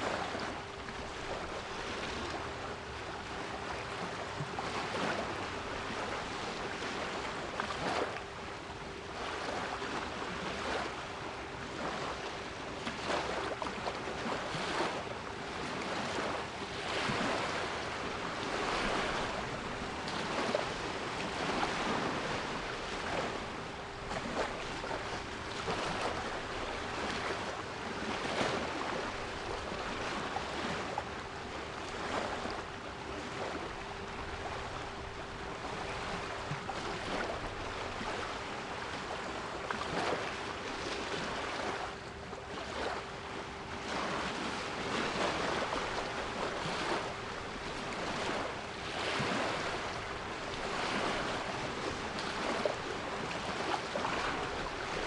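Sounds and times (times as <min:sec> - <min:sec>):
sea waves surging: 0:00.0 - 0:11.1, 0:11.7 - 0:41.9, 0:42.5 - 0:43.1, 0:43.8 - 0:55.0.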